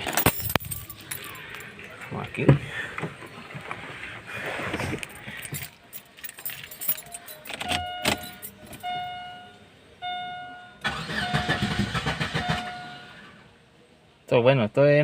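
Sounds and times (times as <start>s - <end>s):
car keys jangling and clicking: 0.0s - 2.4s, 4.9s - 9.4s
car warning chime: 7.2s - 13.2s.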